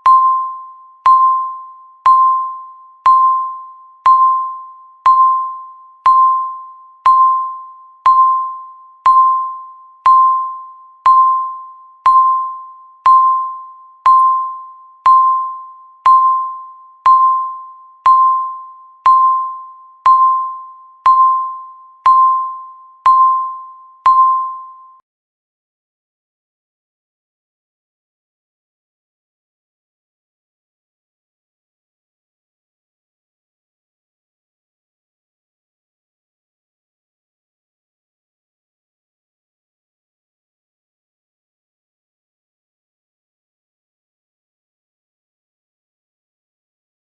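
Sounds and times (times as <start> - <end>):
countdown timer beeps: 0.0 - 25.0.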